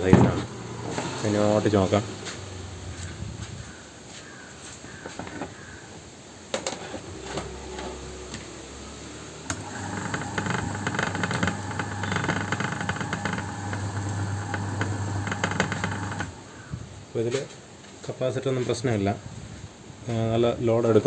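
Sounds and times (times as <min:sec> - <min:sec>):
electric motor humming: 0:07.0 - 0:16.4.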